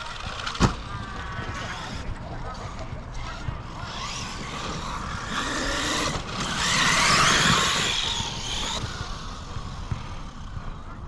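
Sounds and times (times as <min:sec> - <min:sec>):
toy truck motor whining: 0:03.8 - 0:09.8.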